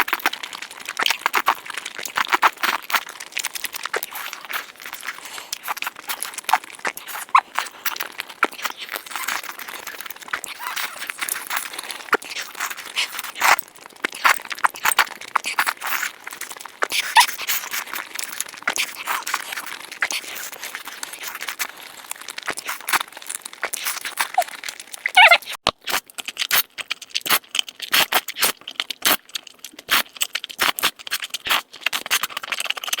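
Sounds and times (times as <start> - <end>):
crunchy chewing: 0.0 - 33.0
short squeak: 25.1 - 25.6.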